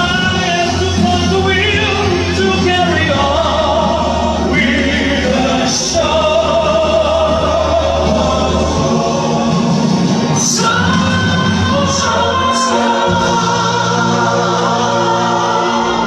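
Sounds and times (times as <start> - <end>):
music with singing voices: 0.0 - 16.0.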